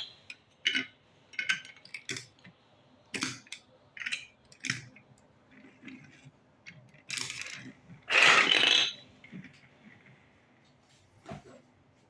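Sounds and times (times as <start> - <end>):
plastic building blocks clicking: 0.6 - 9.0.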